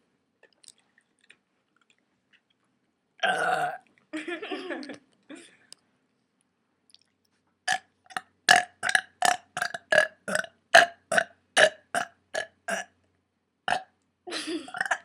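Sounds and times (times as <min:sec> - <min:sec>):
girl burping: 0:03.2 - 0:03.8, 0:13.7 - 0:15.0.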